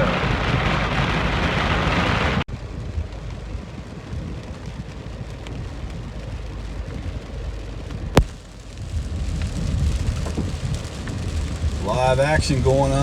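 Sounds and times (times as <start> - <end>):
light rain: 0.0 - 13.0
loud rain: 0.0 - 13.0
vehicle rumble from inside: 0.0 - 13.0.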